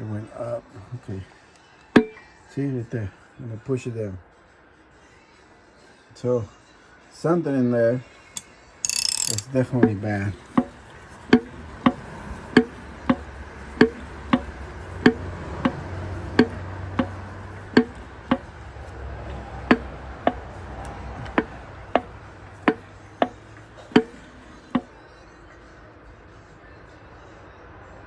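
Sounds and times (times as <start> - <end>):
sharp metallic clicks of piston: 8.4 - 24.8.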